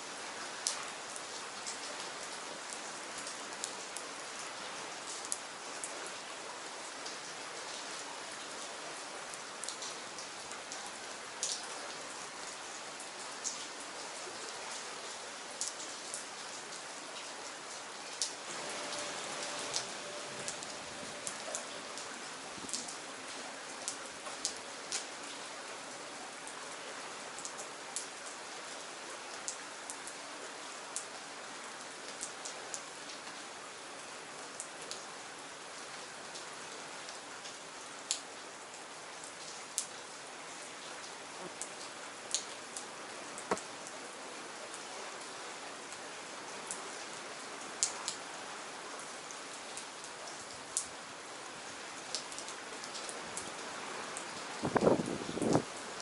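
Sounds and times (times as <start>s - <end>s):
steady rain hiss: 0.0s - 56.0s
raindrops tapping close by: 17.2s - 25.4s, 41.5s - 44.0s, 52.1s - 56.0s.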